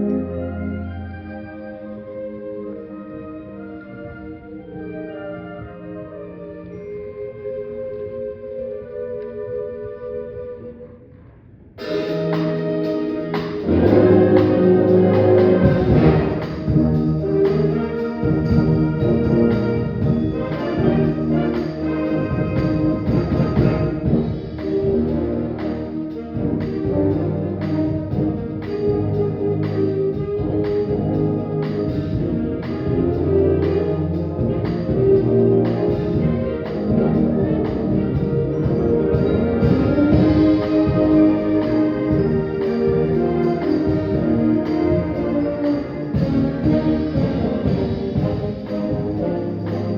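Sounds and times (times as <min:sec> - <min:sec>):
brass chords: 0:00.0 - 0:07.8, 0:11.8 - 0:49.9
percussion strokes: 0:11.1 - 0:49.9
concert band playing: 0:11.8 - 0:49.9.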